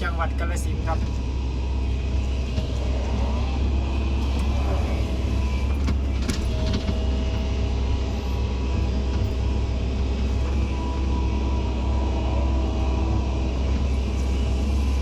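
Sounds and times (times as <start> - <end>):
heavy diesel engine rumbling: 0.0 - 15.0.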